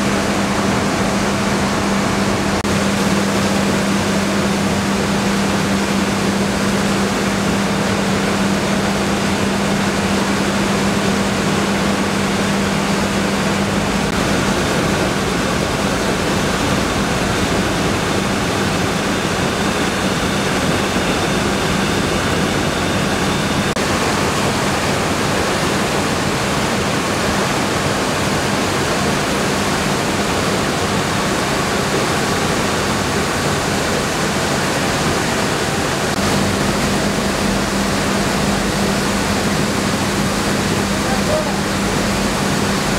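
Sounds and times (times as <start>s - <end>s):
milling machinery running: 0.0s - 42.9s.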